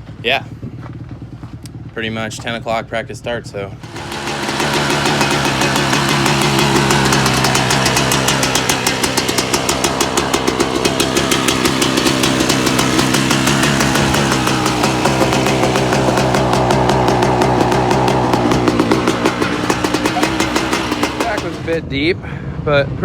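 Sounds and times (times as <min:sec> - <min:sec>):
motocross bike engine running: 0:03.7 - 0:21.9.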